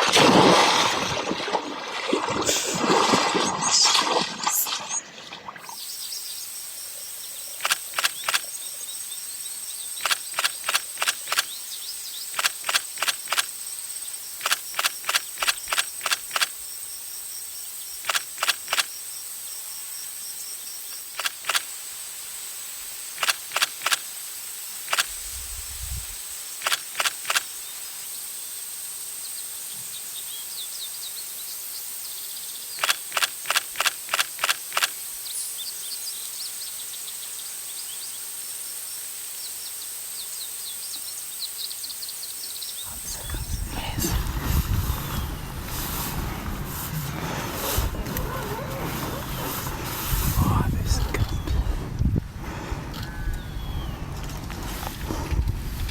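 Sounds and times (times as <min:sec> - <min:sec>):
outdoor background noise: 0:00.0 - 0:55.9
sharp rapid clicks: 0:07.6 - 0:08.5, 0:10.0 - 0:11.6, 0:12.3 - 0:13.6, 0:14.4 - 0:16.6, 0:18.0 - 0:18.9, 0:21.0 - 0:21.7, 0:23.2 - 0:24.1, 0:24.9 - 0:25.2, 0:26.6 - 0:27.5, 0:32.8 - 0:35.0.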